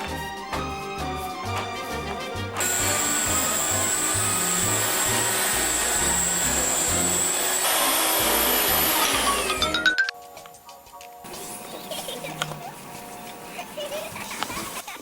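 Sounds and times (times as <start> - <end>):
background music: 0.0 - 15.0
electric power tool whining: 2.6 - 9.8.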